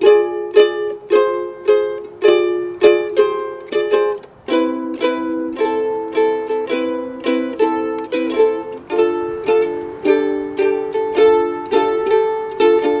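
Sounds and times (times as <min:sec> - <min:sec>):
strummed string instrument chords: 0:00.0 - 0:13.0.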